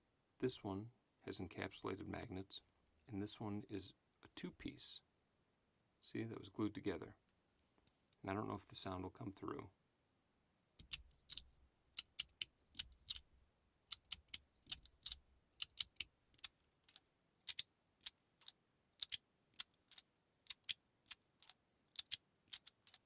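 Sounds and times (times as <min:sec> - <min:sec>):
magnetic slider clicking: 0:10.8 - 0:13.2, 0:13.9 - 0:16.5.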